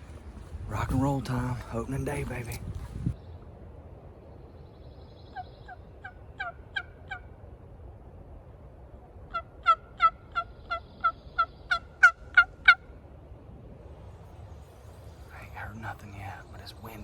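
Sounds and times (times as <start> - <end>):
turkey yelping: 5.6 - 7.3, 9.3 - 12.8.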